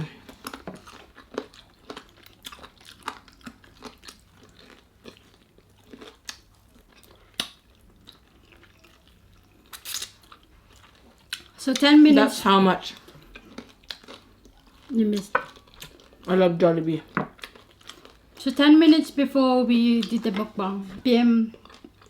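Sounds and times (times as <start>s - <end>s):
chewing crispy fried chicken: 0.1s - 11.9s, 12.8s - 16.4s, 17.3s - 18.5s, 21.5s - 22.0s.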